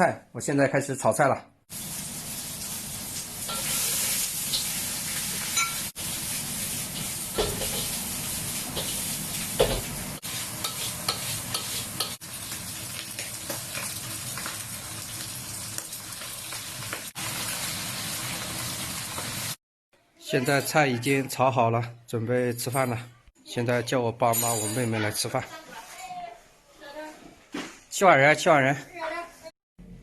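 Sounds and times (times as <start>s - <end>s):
food sizzling in stir-fry: 1.7s - 19.6s.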